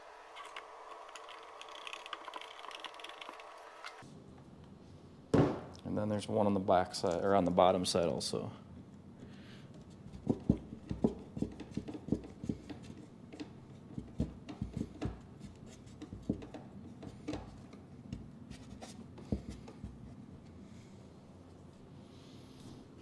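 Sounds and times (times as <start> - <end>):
knocks and scrapes on wood: 9.9 - 20.0.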